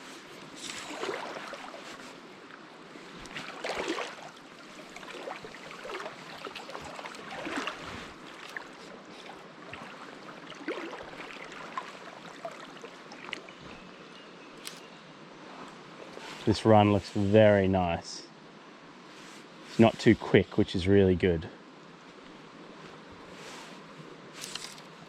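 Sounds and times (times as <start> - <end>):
stream current rushing: 0.0 - 13.7
legs wading through water: 0.4 - 13.9.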